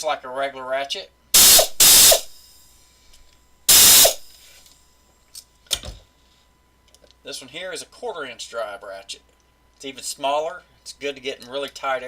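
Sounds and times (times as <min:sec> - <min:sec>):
air ratchet whirring: 0:01.4 - 0:02.4, 0:03.7 - 0:04.5.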